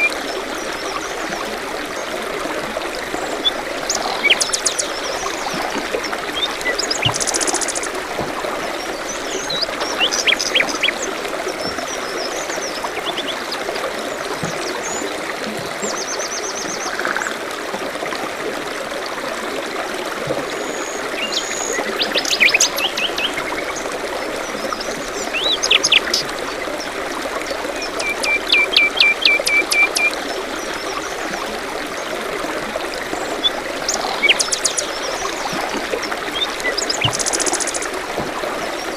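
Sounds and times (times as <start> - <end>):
stream trickling: 0.0 - 38.9
birds chirping and trilling: 8.9 - 11.1.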